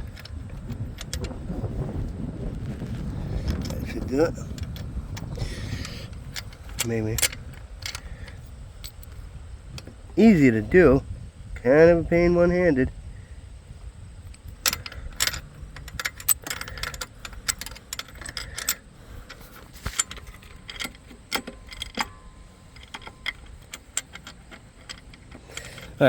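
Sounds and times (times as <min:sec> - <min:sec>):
small metal parts clinking: 0:00.0 - 0:01.5, 0:03.3 - 0:09.2, 0:14.3 - 0:26.0.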